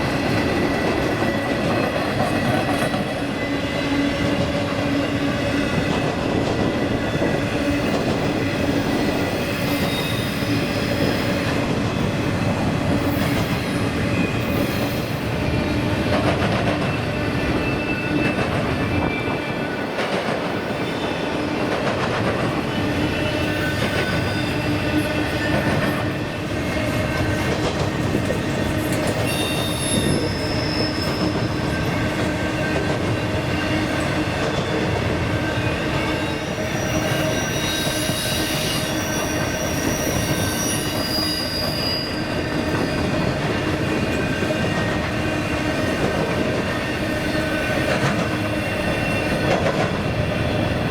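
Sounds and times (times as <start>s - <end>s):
freight train wheels clattering: 0.0s - 50.9s
high-pitched wheel squeals: 8.6s - 11.4s, 23.0s - 25.7s, 28.8s - 32.2s, 35.6s - 43.3s.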